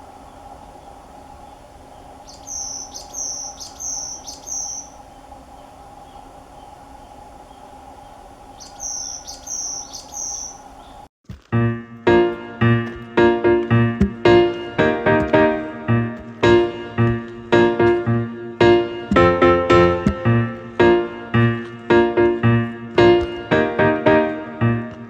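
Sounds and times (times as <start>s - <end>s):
faint steady hum: 0.0s - 11.1s
songbird singing high notes: 0.2s - 11.1s.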